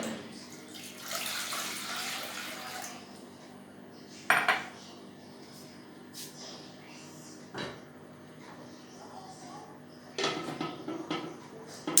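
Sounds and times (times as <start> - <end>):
water running into metal pan: 0.7 - 2.9.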